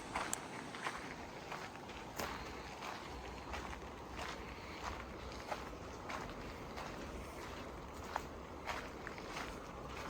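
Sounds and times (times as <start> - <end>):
footsteps walking: 0.0 - 10.0.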